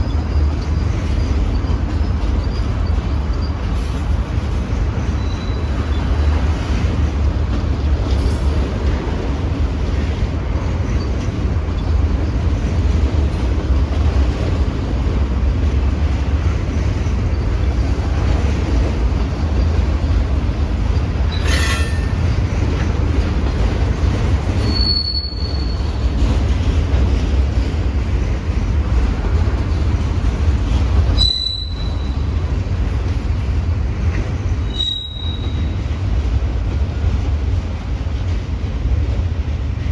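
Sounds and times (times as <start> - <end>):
freight train cars rumbling past: 0.0 - 39.9
high-pitched wheel squeals: 21.3 - 22.4, 24.6 - 25.9, 31.2 - 32.2, 34.7 - 35.8.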